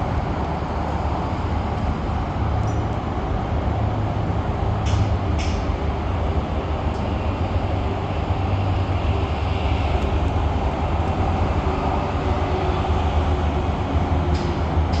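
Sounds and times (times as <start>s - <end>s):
diesel train engine rumbling: 0.0s - 15.0s.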